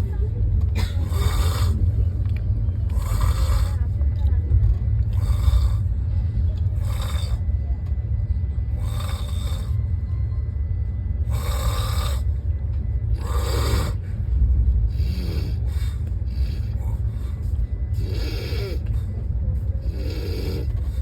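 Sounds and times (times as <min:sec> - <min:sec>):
low rumble: 0:00.0 - 0:21.0
person snoring: 0:02.9 - 0:03.8, 0:05.1 - 0:05.8, 0:06.8 - 0:07.4, 0:08.8 - 0:09.8, 0:11.2 - 0:12.3, 0:13.2 - 0:14.0, 0:14.9 - 0:17.1, 0:18.0 - 0:18.9, 0:19.8 - 0:21.0.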